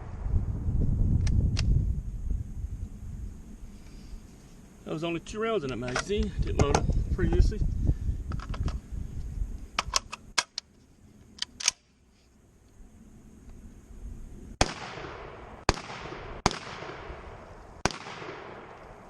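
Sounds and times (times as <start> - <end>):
metallic clicks of gun handling: 8.3 - 8.8, 9.8 - 10.7, 11.3 - 11.9
shotgun shots with echo: 14.6 - 17.2, 17.8 - 18.8.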